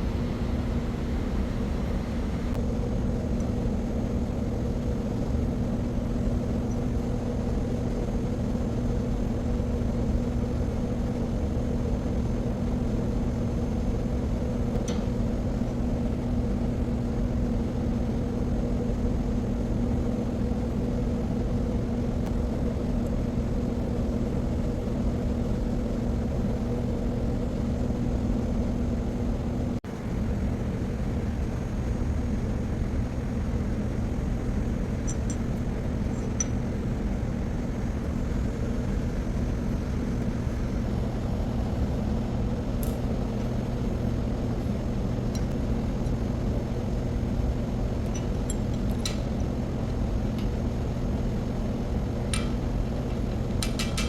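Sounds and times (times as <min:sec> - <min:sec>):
electrical drone: 0:00.0 - 0:02.6
machinery hum and rumble: 0:00.0 - 0:54.0.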